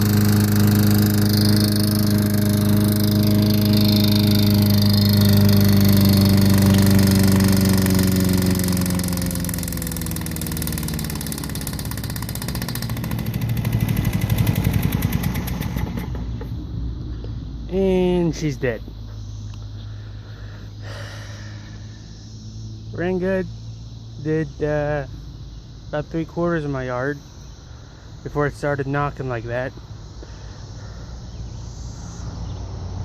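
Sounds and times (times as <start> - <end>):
lawnmower engine knocking: 0.0 - 16.5.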